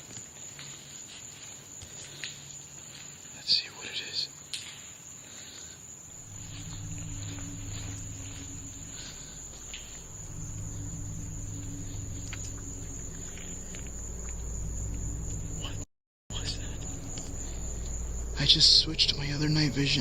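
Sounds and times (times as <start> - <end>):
crickets chirring: 0.0 - 20.0
low steady hum: 6.2 - 20.0.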